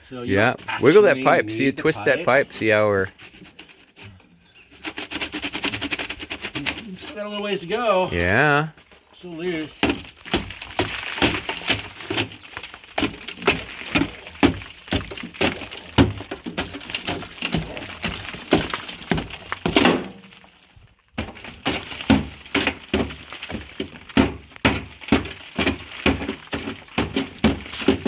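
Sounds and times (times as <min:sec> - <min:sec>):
hand tools chipping cob: 0:03.2 - 0:07.4, 0:09.6 - 0:20.3, 0:21.2 - 0:28.0.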